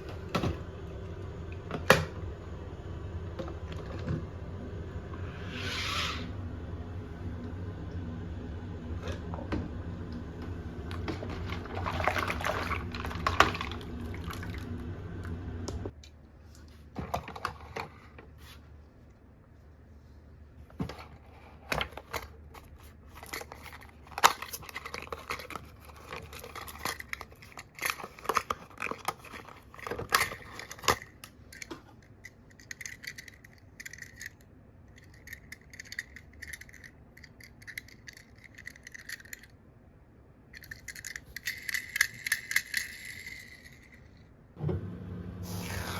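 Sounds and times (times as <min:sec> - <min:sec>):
steady low hum: 0:00.0 - 0:17.0
toy cars clicking and scraping: 0:21.0 - 0:39.6, 0:40.5 - 0:44.2.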